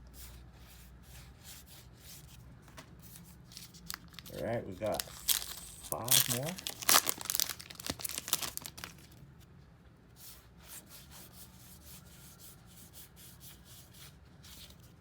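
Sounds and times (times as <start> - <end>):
cards rustling: 3.4 - 9.2
wrapper tearing and crinkling: 3.5 - 9.2.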